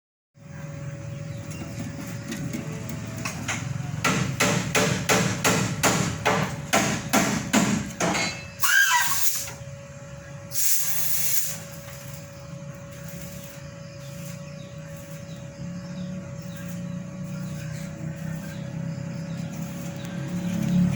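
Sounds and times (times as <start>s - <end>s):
sharp knocks: 3.2s - 8.4s
burst of hiss: 8.6s - 9.6s, 10.5s - 11.6s.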